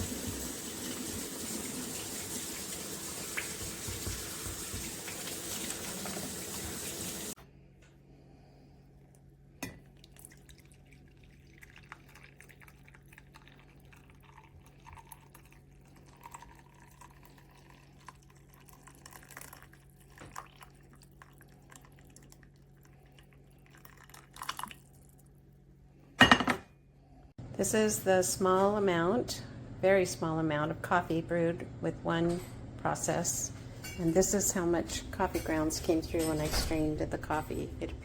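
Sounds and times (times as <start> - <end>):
running water: 0.0 - 7.4.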